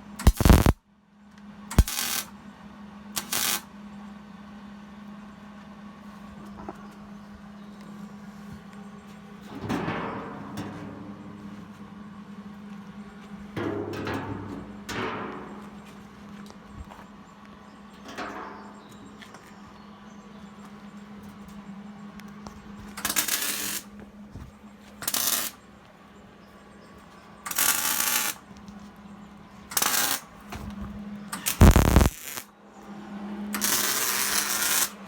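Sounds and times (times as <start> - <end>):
steady low hum: 0.0 - 27.5, 28.4 - 34.9
welding arc crackling: 0.2 - 0.8, 1.8 - 2.3, 3.2 - 3.6, 23.0 - 23.9, 25.1 - 25.6, 27.5 - 28.4, 29.8 - 30.2, 31.4 - 32.5, 33.6 - 35.0.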